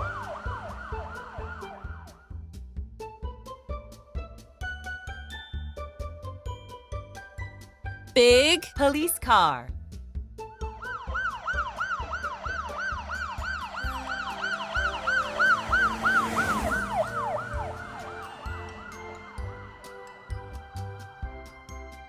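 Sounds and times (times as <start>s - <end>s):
police siren yelp: 0.0s - 2.1s, 10.8s - 21.0s
children's music with steady beat: 0.3s - 16.0s, 17.2s - 22.0s.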